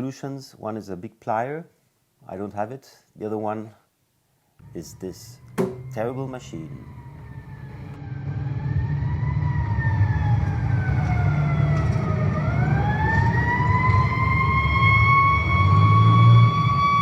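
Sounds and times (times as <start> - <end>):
angle grinder motor whine: 4.6 - 17.0.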